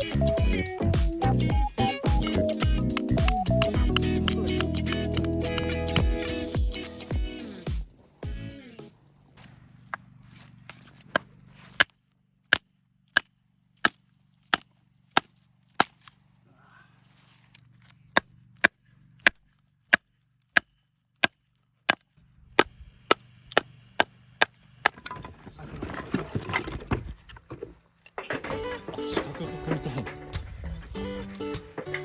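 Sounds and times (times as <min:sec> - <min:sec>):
sharp chopping strikes: 0:02.1 - 0:06.8, 0:11.0 - 0:16.1, 0:18.2 - 0:25.0.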